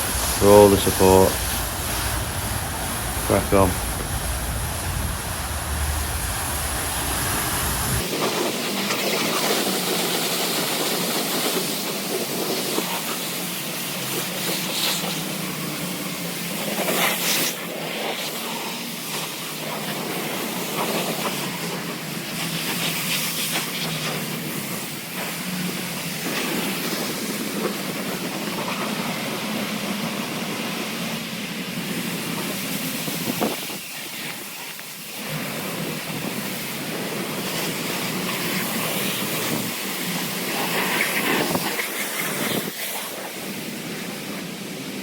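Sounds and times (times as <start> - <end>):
pressure washer humming: 0.0 - 8.1
water spray hissing on car: 0.0 - 45.0.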